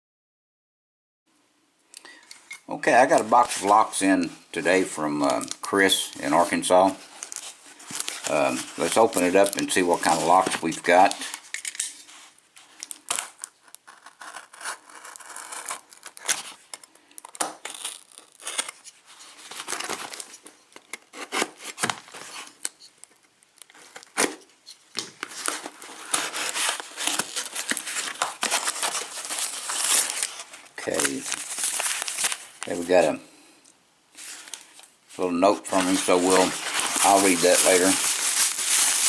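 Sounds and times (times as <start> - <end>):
cardboard packaging tearing: 5.0 - 20.4, 21.1 - 22.8, 25.2 - 33.1, 35.7 - 39.0.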